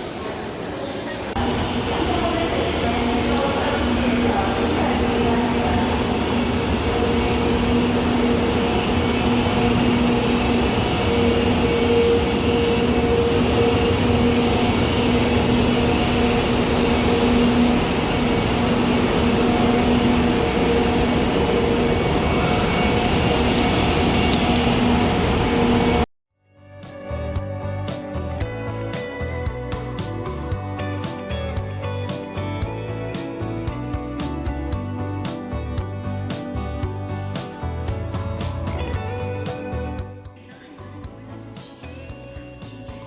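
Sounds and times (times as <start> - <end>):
train carriage running noise: 0.0 - 26.0
low hum: 1.4 - 26.1.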